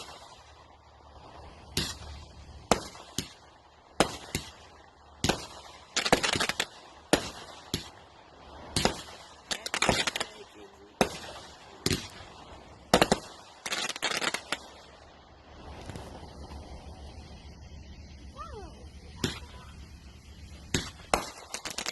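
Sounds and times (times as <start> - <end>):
firework bangs: 0.0 - 0.7, 1.6 - 17.5, 19.0 - 21.9
crackling pops of fireworks: 0.0 - 0.8, 1.6 - 16.6, 19.0 - 21.9
faint steady hiss: 0.0 - 21.9.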